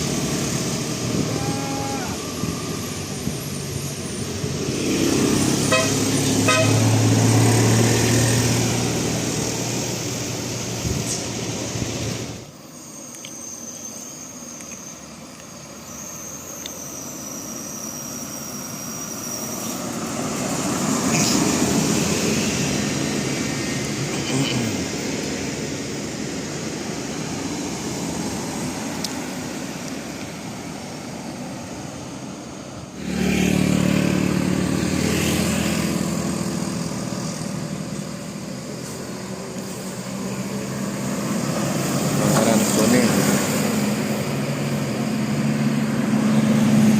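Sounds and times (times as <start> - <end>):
vehicle passing on road: 0.0 - 12.7, 14.4 - 46.9.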